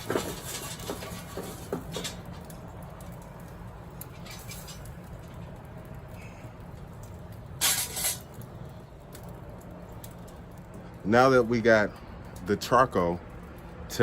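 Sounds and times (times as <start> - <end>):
charcoal clinking: 0.0 - 10.7
coals clattering: 0.0 - 14.0.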